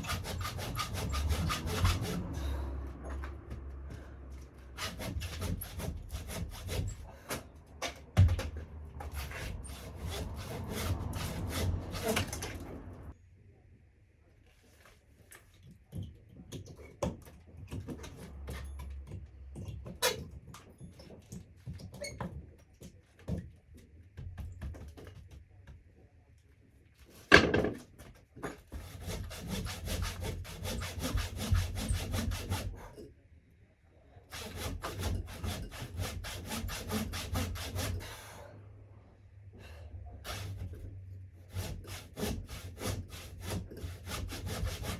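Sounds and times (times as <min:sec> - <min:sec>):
handsaw cutting a log: 0:00.0 - 0:03.2, 0:04.6 - 0:13.0, 0:28.7 - 0:33.0, 0:34.3 - 0:38.5, 0:40.2 - 0:44.9
wood knocking and scraping: 0:00.0 - 0:13.1, 0:27.3 - 0:28.9.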